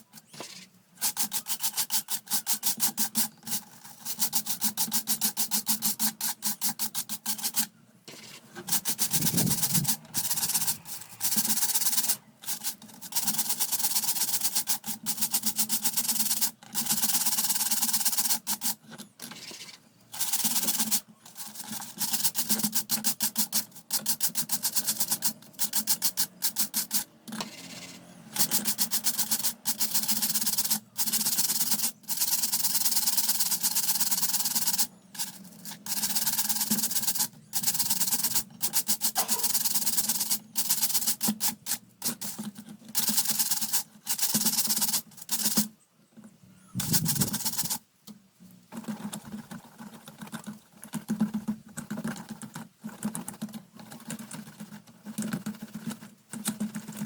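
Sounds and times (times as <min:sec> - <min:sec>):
rapid scrubbing strokes: 0:00.0 - 0:17.8, 0:46.8 - 0:47.8.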